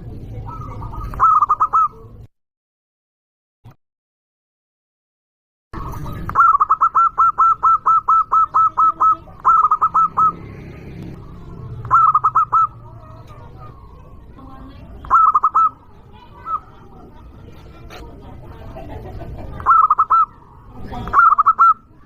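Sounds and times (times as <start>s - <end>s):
dove cooing in ringing notes: 0.3s - 2.1s, 5.8s - 17.0s, 19.0s - 22.0s.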